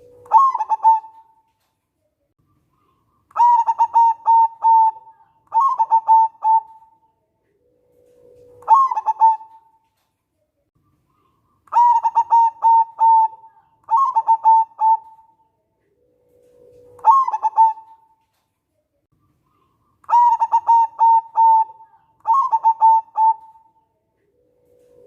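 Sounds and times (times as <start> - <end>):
dove staccato cooing: 0.0 - 1.5, 3.3 - 7.0, 7.9 - 9.8, 11.7 - 15.4, 16.3 - 18.2, 20.0 - 25.0.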